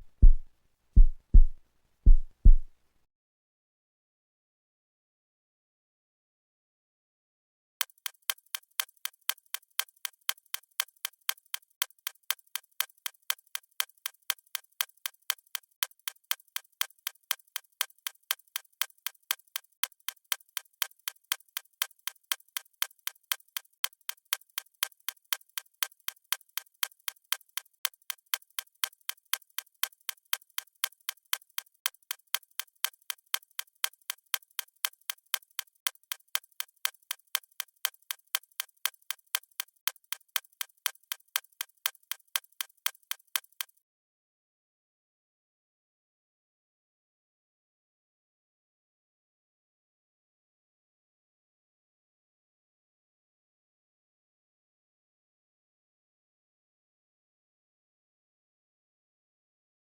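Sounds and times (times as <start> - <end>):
steady ticking: 7.8 - 43.8.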